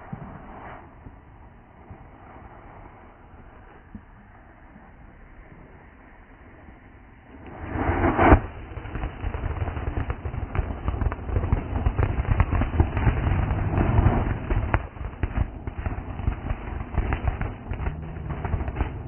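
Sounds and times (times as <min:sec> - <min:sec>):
fireworks crackling pops: 0:00.0 - 0:02.6, 0:07.3 - 0:19.0
low rumble: 0:00.0 - 0:19.0.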